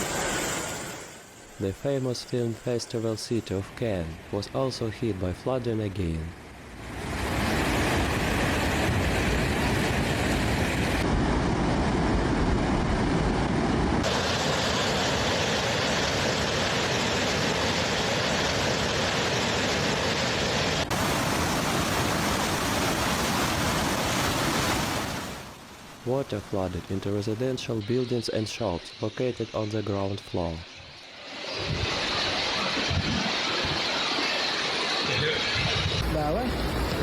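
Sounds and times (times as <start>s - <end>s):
heavy rain: 20.9s - 26.8s
floodwater rushing: 20.9s - 27.3s.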